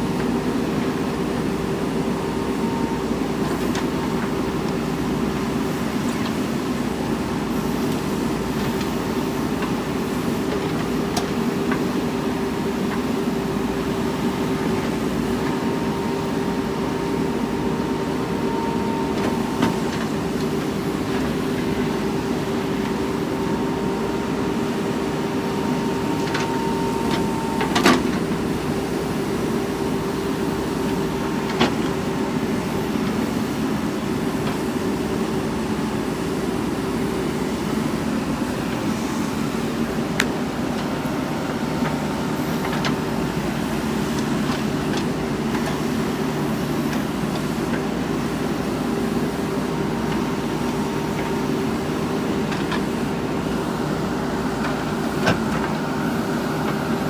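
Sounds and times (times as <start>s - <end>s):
diesel engine running: 0.0s - 57.0s.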